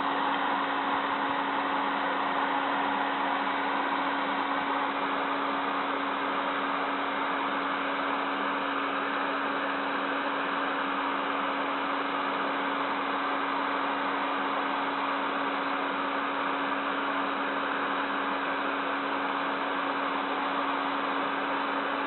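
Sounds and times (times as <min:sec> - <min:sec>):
computer fan air rush: 0:00.0 - 0:12.2.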